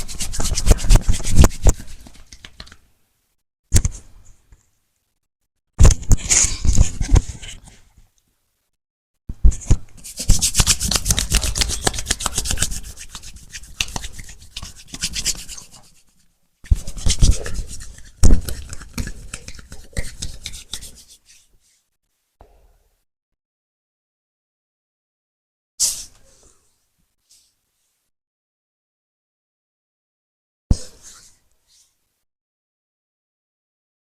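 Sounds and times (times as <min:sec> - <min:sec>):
hands rubbing over skin: 0:10.0 - 0:21.5.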